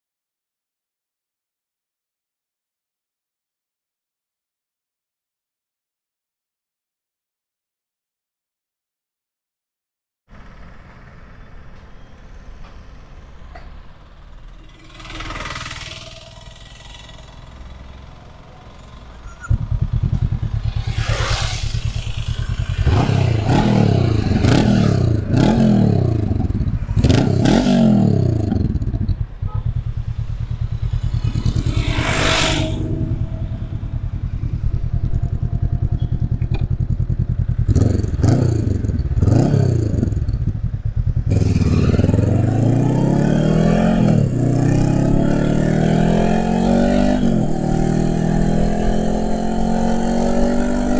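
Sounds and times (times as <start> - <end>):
motorcycle engine idling and revving: 10.3 - 50.9.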